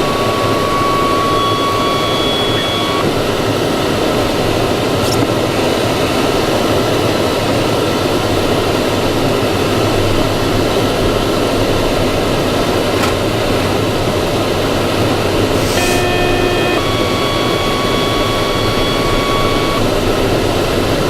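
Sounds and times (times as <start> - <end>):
vehicle cabin road noise: 0.0 - 21.0.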